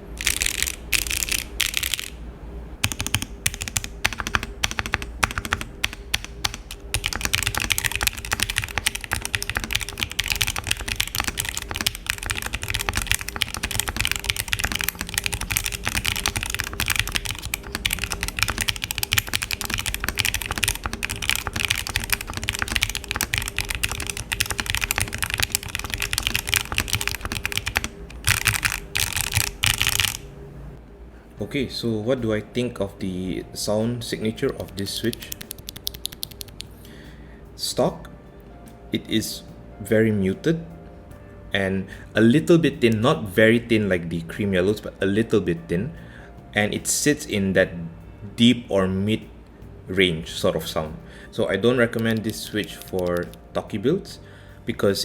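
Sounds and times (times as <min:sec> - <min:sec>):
typing on a mechanical keyboard: 0:00.1 - 0:02.1, 0:02.8 - 0:30.2, 0:34.5 - 0:36.7, 0:51.9 - 0:53.4.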